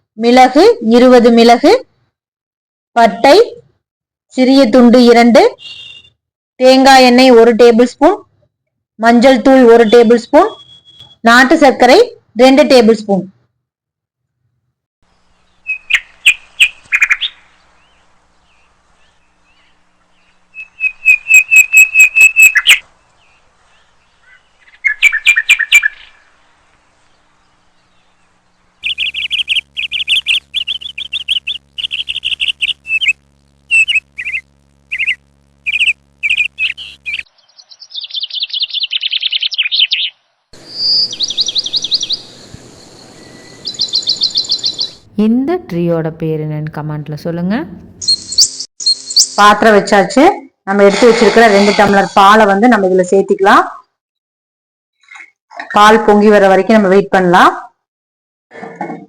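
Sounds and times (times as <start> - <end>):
birds chirping: 5.6 - 6.1, 9.8 - 11.2, 15.1 - 45.1, 47.8 - 49.4.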